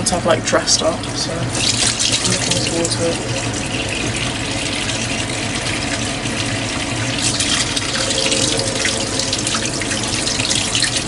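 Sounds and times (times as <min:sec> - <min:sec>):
tap water splashing into sink: 0:01.0 - 0:11.0.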